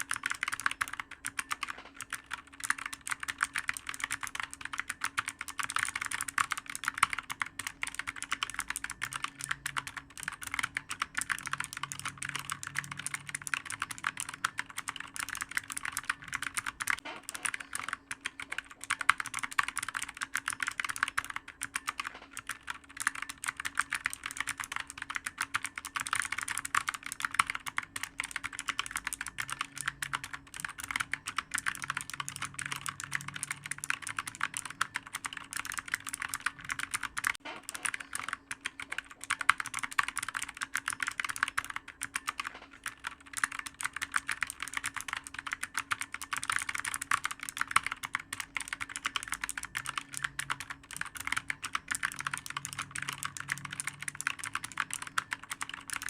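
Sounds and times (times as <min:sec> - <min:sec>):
faint steady hum: 0:00.0 - 0:56.0
keyboard typing: 0:00.0 - 0:56.0.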